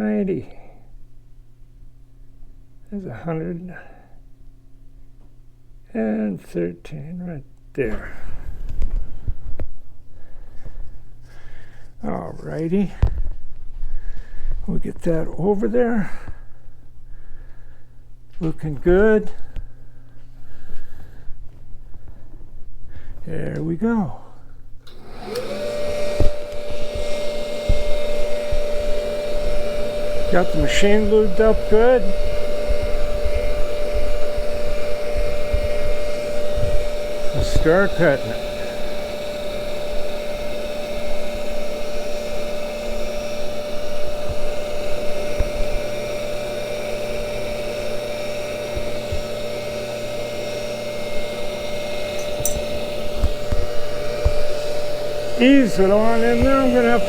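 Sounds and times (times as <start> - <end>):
grinder motor whirring: 24.8 - 57.0.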